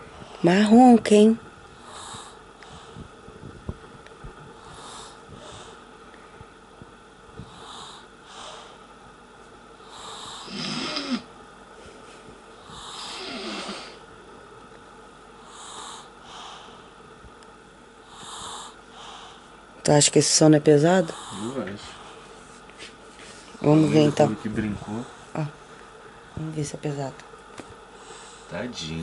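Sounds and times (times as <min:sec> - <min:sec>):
child snoring: 0:09.9 - 0:11.3, 0:12.6 - 0:14.0, 0:18.1 - 0:18.8.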